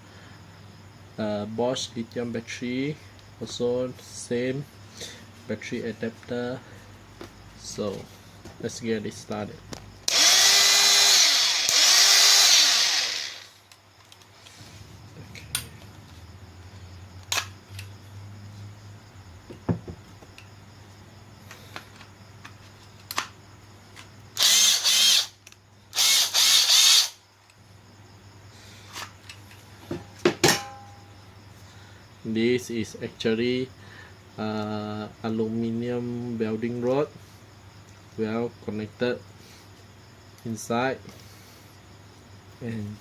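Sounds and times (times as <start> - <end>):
power tool motor bursts: 10.1 - 13.6, 24.4 - 27.2.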